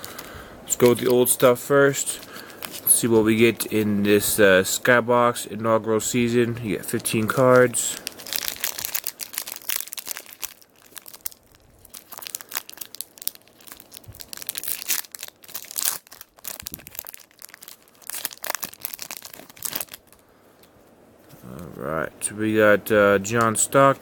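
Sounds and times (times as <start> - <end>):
wrapper crinkling and tearing: 0.0 - 3.5, 6.8 - 20.2.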